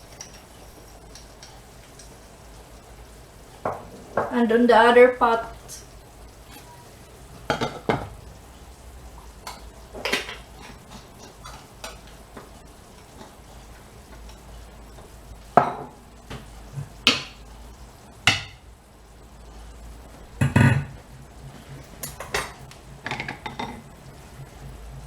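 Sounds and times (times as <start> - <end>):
utensils clinking against pots: 0.0 - 2.2, 6.4 - 8.1, 9.4 - 12.4, 21.8 - 23.8
faint background hum: 0.0 - 25.0.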